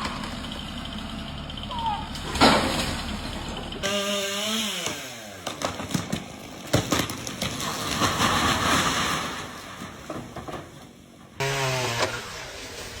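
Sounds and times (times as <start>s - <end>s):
sharp cracks and knocks: 2.2s - 3.4s, 4.8s - 12.2s.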